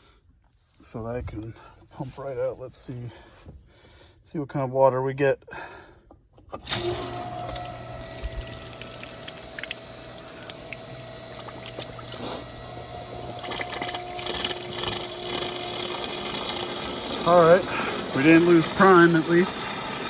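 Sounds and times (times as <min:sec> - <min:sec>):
pump motor hum: 0:06.5 - 0:20.0
water splashing rush: 0:13.4 - 0:20.0.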